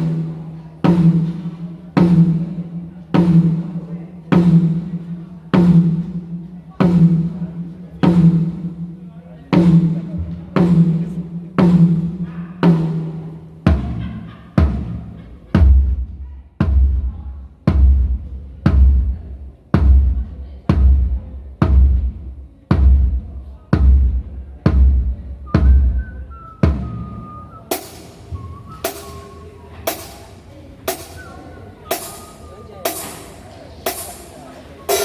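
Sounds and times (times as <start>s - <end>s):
bass drum thuds: 13.7s - 29.3s.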